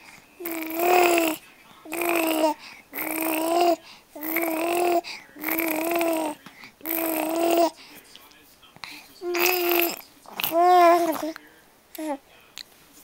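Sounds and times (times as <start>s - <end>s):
baby cooing: 0.4s - 7.8s, 9.2s - 12.2s.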